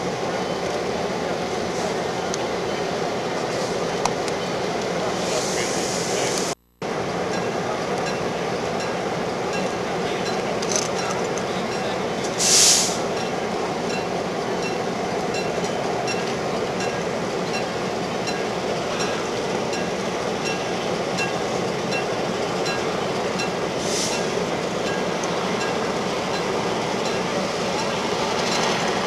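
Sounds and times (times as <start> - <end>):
locomotive running: 0.0 - 29.0
air hissing: 5.2 - 6.6, 12.4 - 13.2, 23.8 - 24.5.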